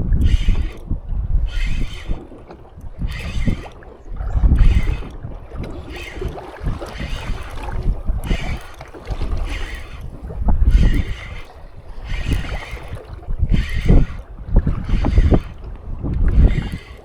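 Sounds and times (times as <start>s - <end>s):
water splashing against boat hull: 0.0s - 17.0s
wind buffeting microphone: 0.0s - 17.0s.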